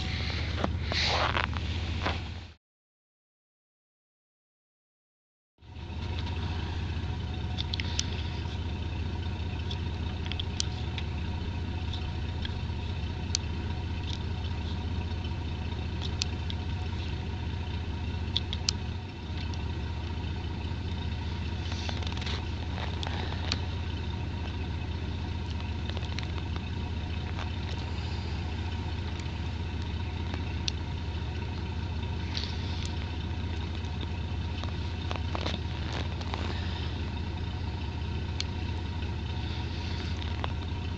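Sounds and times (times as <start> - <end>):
engine idling: 0.0 - 2.6, 5.6 - 40.9
faint clicks and ticks: 7.4 - 8.6, 9.5 - 11.2, 13.2 - 17.2, 18.2 - 20.2, 25.4 - 37.2.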